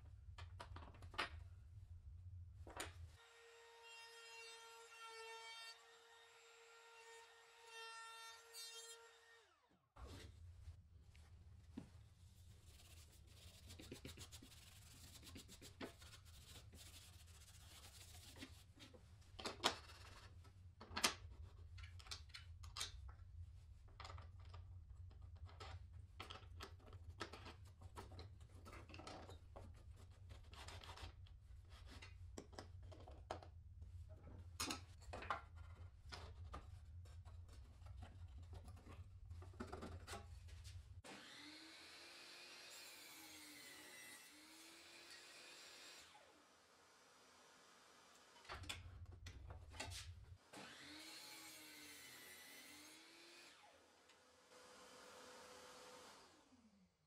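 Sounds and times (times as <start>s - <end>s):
rubbing and scraping on wood: 12.4s - 19.0s.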